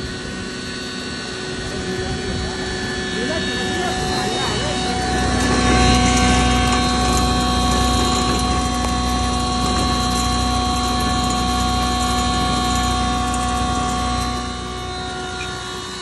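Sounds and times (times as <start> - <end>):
grinder machine humming: 0.0 - 16.0
whining tones: 0.0 - 16.0.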